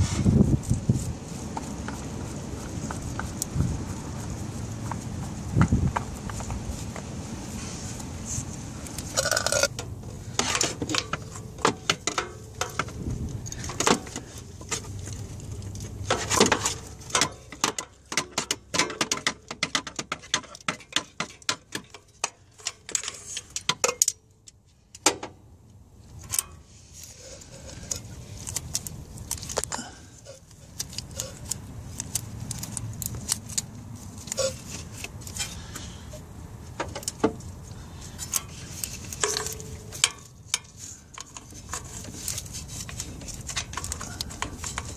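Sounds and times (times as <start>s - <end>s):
metal tools clinking on engine parts: 38.1s - 44.9s.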